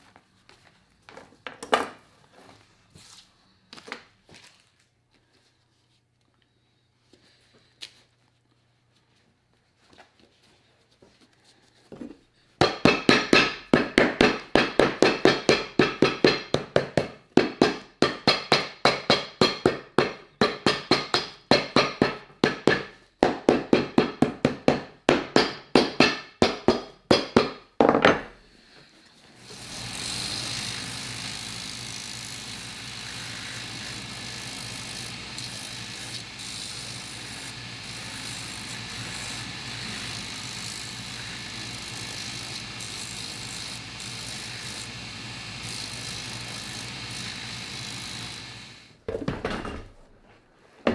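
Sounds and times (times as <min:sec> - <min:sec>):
hammer striking boot sole: 0:12.6 - 0:28.3
electric machine humming: 0:29.4 - 0:49.0.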